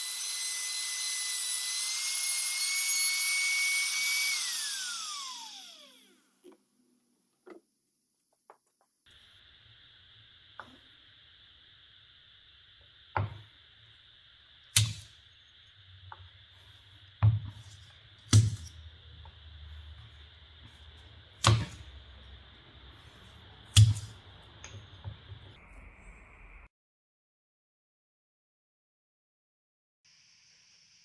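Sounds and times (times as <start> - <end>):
faint steady hiss: 6.6 - 26.7.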